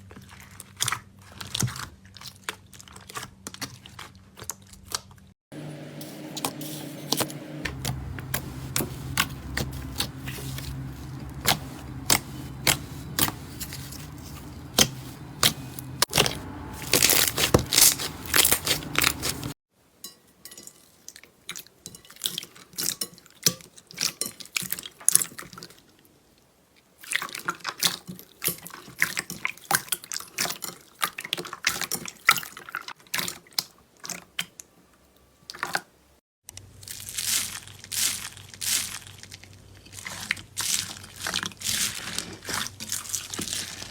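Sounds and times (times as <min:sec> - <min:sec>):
steady low hum: 0:05.6 - 0:19.6.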